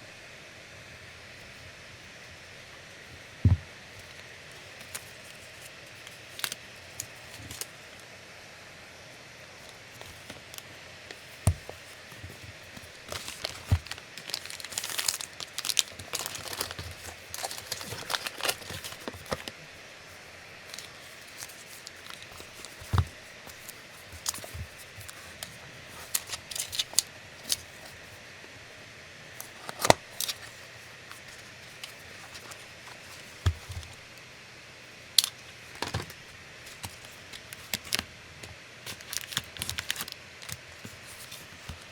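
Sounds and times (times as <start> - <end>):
plastic and paper crinkling: 4.0 - 7.8, 9.6 - 19.6, 20.6 - 28.0, 29.4 - 34.0, 35.2 - 41.9.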